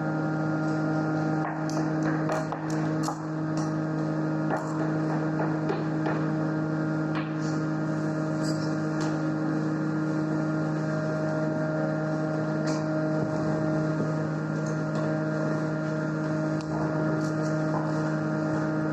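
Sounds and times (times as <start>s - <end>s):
machine drone with low hum: 0.0s - 18.9s.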